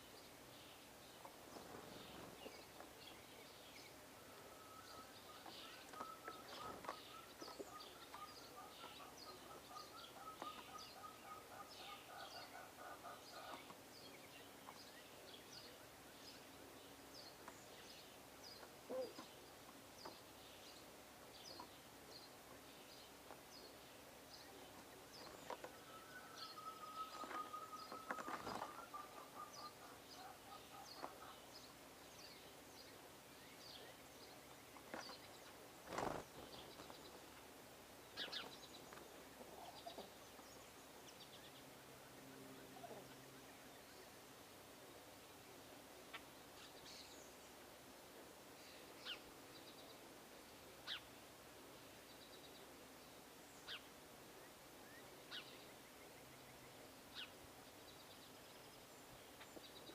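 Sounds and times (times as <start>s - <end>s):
small birds chirping: 0.0s - 59.9s
rapid bird trill: 4.6s - 13.5s.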